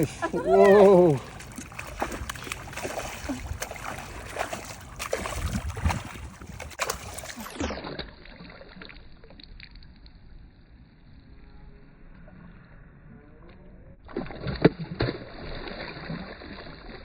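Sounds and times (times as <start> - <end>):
knocks and splashes on a boat: 0.0 - 8.8.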